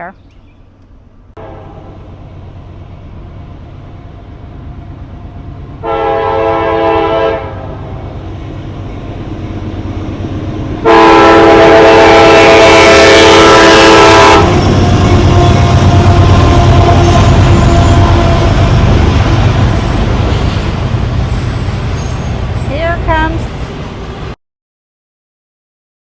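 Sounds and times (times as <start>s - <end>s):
train rumble: 0.0s - 24.4s
locomotive horn blasts: 1.4s - 2.0s, 5.8s - 7.8s, 10.8s - 18.7s.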